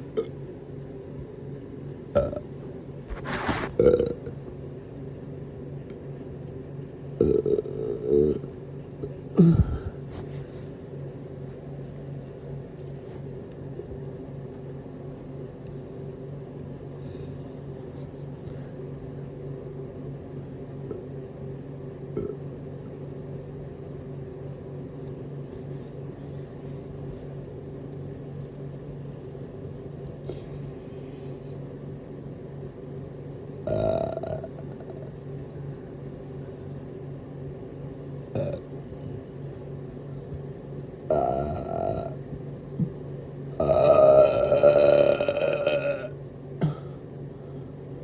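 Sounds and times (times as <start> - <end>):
steady low hum: 0.0 - 48.0
person burping: 2.2 - 2.4, 7.2 - 8.5, 9.4 - 10.0, 22.2 - 22.4, 33.7 - 35.1, 38.4 - 38.6, 41.1 - 42.2, 43.6 - 46.9.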